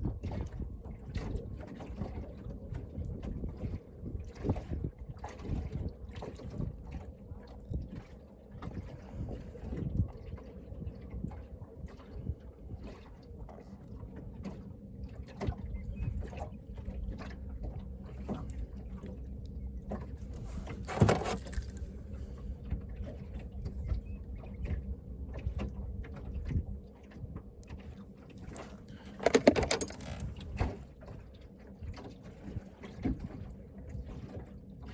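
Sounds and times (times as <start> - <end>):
knocks and clunks in boat: 0.0 - 34.9
low steady hum: 5.8 - 34.9.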